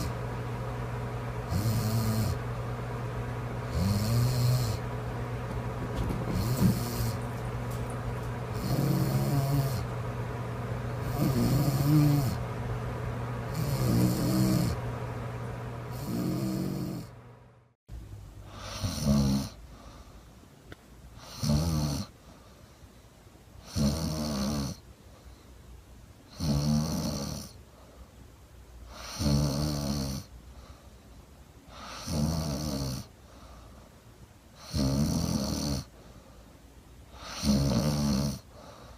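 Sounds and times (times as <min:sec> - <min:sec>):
steady hum: 0:00.0 - 0:23.6
woman snoring: 0:01.5 - 0:02.4, 0:03.6 - 0:04.9, 0:06.2 - 0:07.4, 0:08.5 - 0:09.9, 0:11.0 - 0:12.4, 0:13.5 - 0:14.8, 0:15.9 - 0:17.2, 0:18.5 - 0:19.6, 0:21.2 - 0:22.1, 0:23.6 - 0:24.8, 0:26.3 - 0:27.6, 0:28.9 - 0:30.3, 0:31.8 - 0:33.1, 0:34.6 - 0:35.9, 0:37.1 - 0:38.5.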